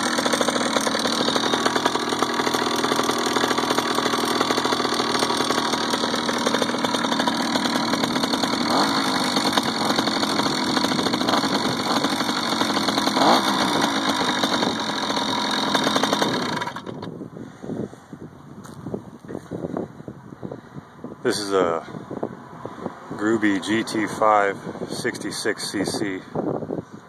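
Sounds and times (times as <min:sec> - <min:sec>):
two-stroke bicycle engine running: 0:00.0 - 0:17.5.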